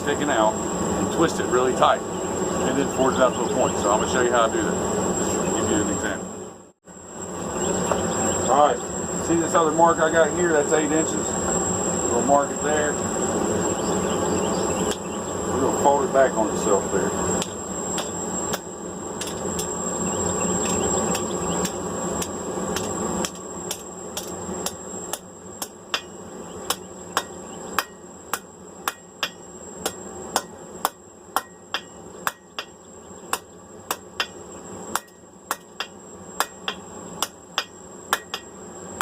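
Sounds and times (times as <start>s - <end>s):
thin high whine: 0.0s - 39.0s
hammer striking metal on anvil: 22.8s - 38.5s.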